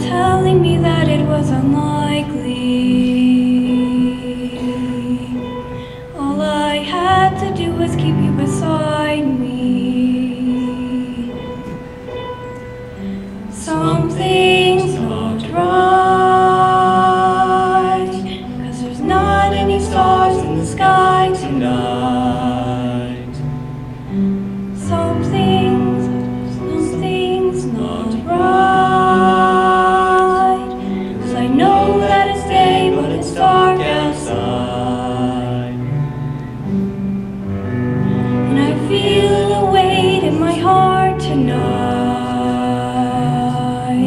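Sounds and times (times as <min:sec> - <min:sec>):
instrumental backing: 0:00.0 - 0:44.0
person singing long notes: 0:24.9 - 0:36.1.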